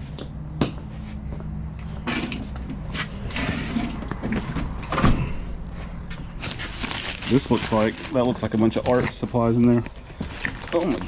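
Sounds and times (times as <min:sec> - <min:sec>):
steady low hum: 0:00.0 - 0:06.8
scraping and rustling: 0:05.8 - 0:11.0
boxes being shifted: 0:06.4 - 0:11.0.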